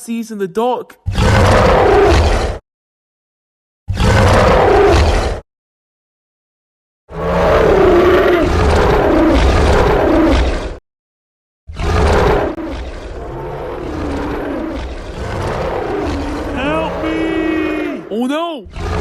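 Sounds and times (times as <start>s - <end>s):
dinosaur growl: 1.1s - 2.6s, 3.9s - 5.4s, 7.1s - 10.8s, 11.7s - 19.0s
dinosaur roar: 1.1s - 2.6s, 3.9s - 5.4s, 7.1s - 10.8s, 11.7s - 19.0s.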